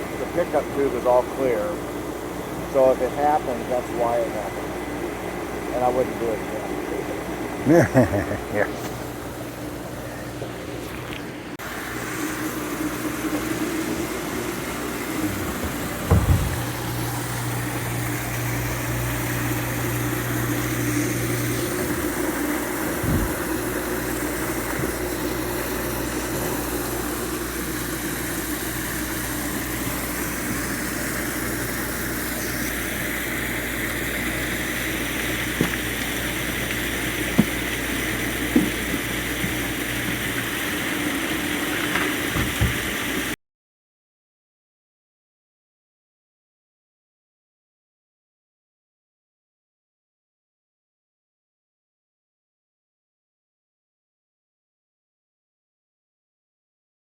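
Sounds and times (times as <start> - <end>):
pond pump humming: 0.0 - 43.4
water flowing down waterfall: 11.6 - 43.4
dull knocks: 15.2 - 17.0, 23.0 - 23.4, 37.4 - 37.6, 42.3 - 42.9.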